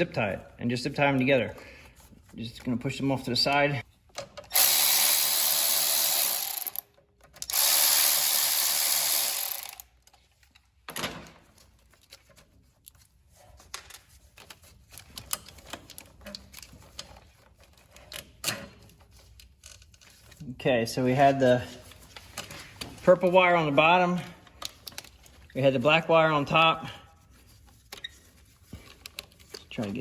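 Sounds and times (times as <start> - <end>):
cordless drill running: 4.5 - 6.8, 7.5 - 9.8
wires and parts rattling: 9.3 - 30.0.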